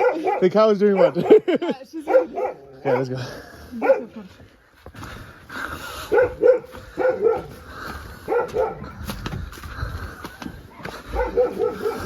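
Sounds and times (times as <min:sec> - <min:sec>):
dog barking: 0:00.0 - 0:01.4, 0:02.0 - 0:04.2, 0:06.0 - 0:09.1, 0:10.7 - 0:12.0.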